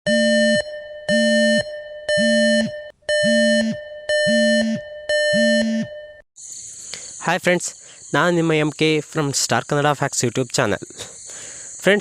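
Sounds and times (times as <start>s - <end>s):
loud phone alert beep: 0.1s - 6.1s.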